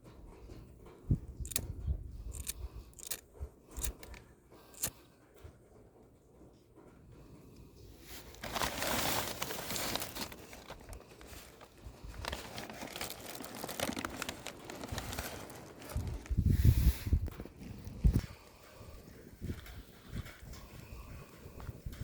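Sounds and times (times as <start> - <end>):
crinkly material crackling: 7.9 - 22.0.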